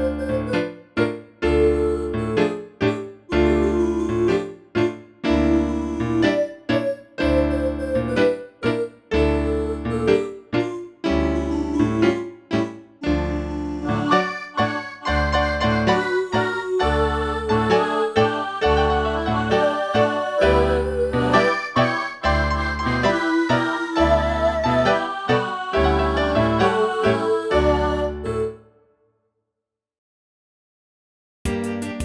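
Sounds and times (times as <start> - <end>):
polyphonic phone ringtone: 6.3 - 8.4.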